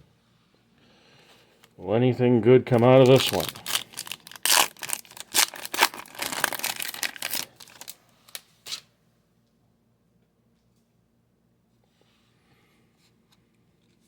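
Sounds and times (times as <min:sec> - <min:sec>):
packaging torn open and crinkled: 0:02.7 - 0:08.9.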